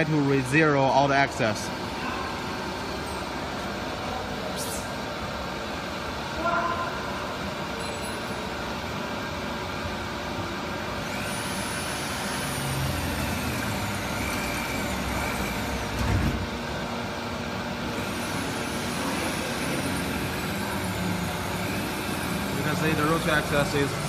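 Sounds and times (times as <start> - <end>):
steady mechanical hum: 0.0 - 24.0
cnc motors whining: 9.7 - 24.0.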